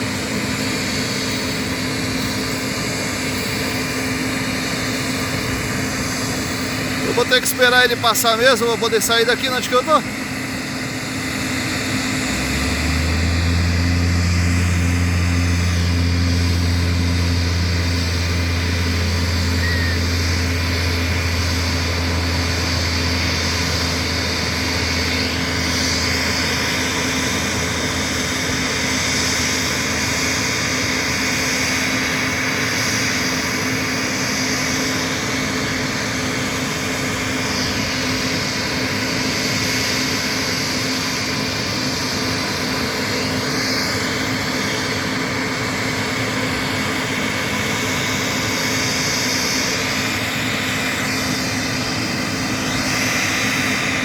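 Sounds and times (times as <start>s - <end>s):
low hum: 0.0s - 31.8s
airliner engines droning: 0.0s - 54.0s.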